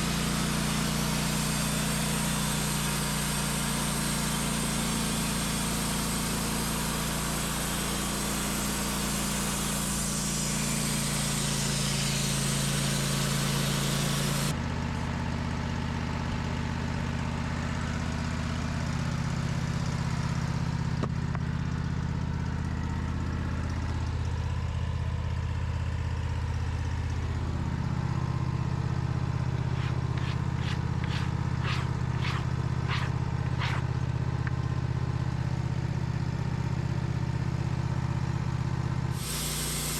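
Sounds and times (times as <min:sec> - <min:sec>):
sawmill engine running: 0:00.0 - 0:14.6, 0:27.2 - 0:36.2, 0:39.1 - 0:39.9
band saw blade cutting wood: 0:00.9 - 0:14.5, 0:29.6 - 0:33.9.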